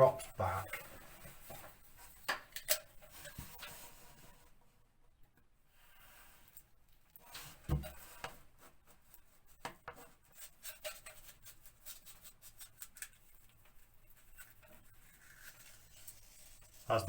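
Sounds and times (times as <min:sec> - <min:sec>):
brush scratching on wallpaper: 0:00.1 - 0:02.2, 0:07.2 - 0:17.0
thump: 0:07.7 - 0:08.0.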